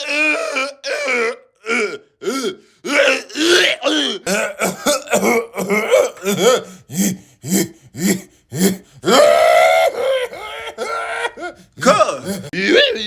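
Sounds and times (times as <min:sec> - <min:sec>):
man wheezing cry: 0:00.0 - 0:12.6
man coughing: 0:03.4 - 0:09.2, 0:09.8 - 0:12.6.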